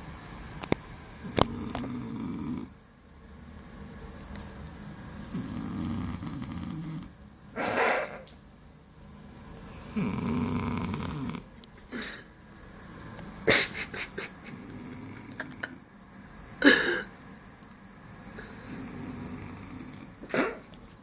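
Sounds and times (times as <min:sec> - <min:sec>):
boy snoring: 0:01.2 - 0:02.8, 0:05.2 - 0:08.3, 0:09.8 - 0:12.3, 0:14.5 - 0:15.8, 0:16.6 - 0:17.1, 0:18.4 - 0:20.7.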